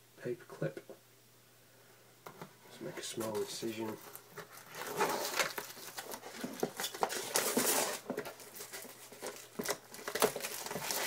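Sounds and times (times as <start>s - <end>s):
packaging rustling: 3.2s - 11.0s.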